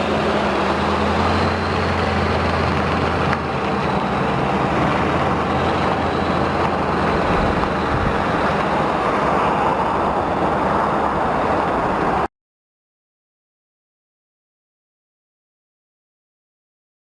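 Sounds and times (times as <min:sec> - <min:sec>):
truck engine running: 0:00.0 - 0:12.3.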